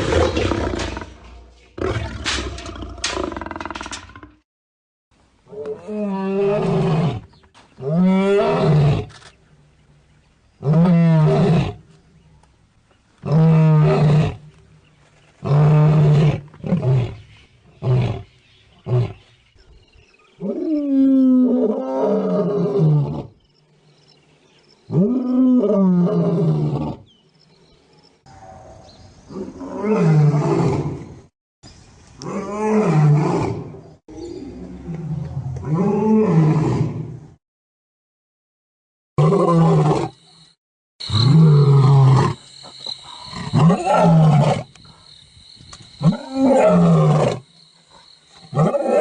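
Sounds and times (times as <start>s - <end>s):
lion roaring and snarling: 0.0s - 4.4s, 32.2s - 37.2s, 41.1s - 42.4s, 43.2s - 44.7s, 46.0s - 47.4s, 48.5s - 49.0s.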